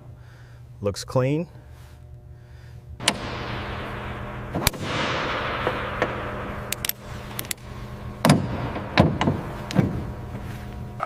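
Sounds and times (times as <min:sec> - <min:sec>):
low machinery hum: 0:00.0 - 0:11.0
sharp metallic clicks and clanks: 0:05.6 - 0:07.6
sharp knocks: 0:08.2 - 0:10.0.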